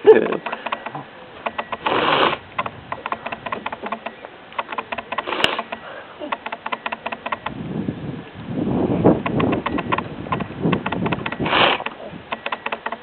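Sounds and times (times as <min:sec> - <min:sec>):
rapid faint clicking: 0:00.2 - 0:07.6, 0:09.2 - 0:13.0
person sniffing: 0:01.8 - 0:02.4.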